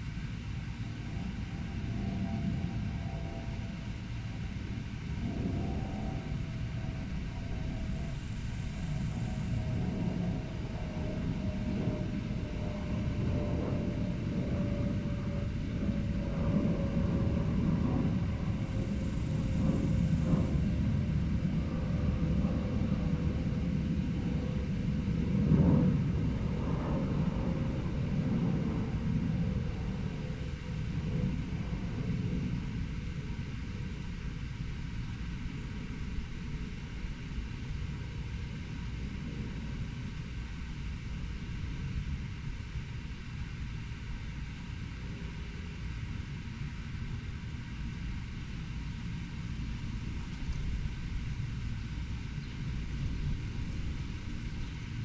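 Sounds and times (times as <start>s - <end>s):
traffic rumble: 0.0s - 55.0s.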